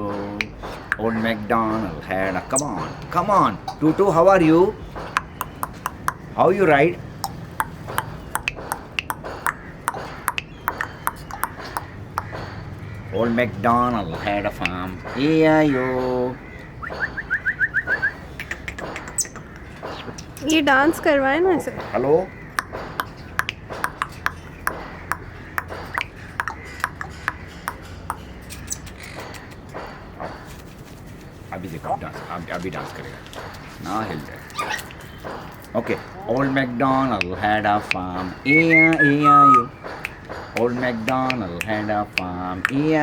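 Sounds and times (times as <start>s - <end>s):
sharp ringing clicks: 0.4s - 16.2s, 20.2s - 30.2s.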